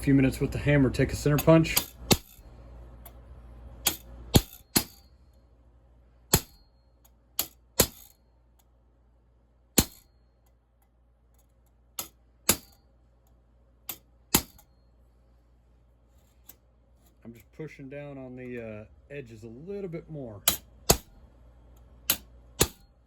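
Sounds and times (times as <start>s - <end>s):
hammer striking metal punch: 1.3s - 2.4s, 3.8s - 5.1s, 6.3s - 6.8s, 7.4s - 8.2s, 9.8s - 10.3s, 12.0s - 12.9s, 13.9s - 14.8s, 20.4s - 21.2s, 22.0s - 23.0s.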